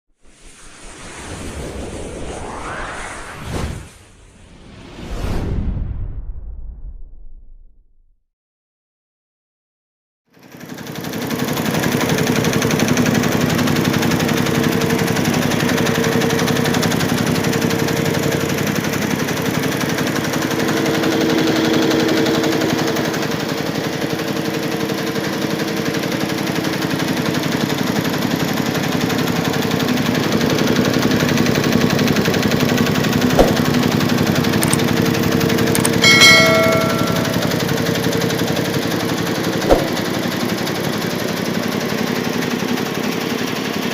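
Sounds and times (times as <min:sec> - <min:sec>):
bell-like ringing tone: 0:20.2 - 0:24.3, 0:35.8 - 0:38.0
sharp click: 0:33.4 - 0:33.7, 0:34.6 - 0:34.9, 0:35.8 - 0:37.6, 0:39.7 - 0:40.0
embroidery machine clattering: 0:35.7 - 0:37.8.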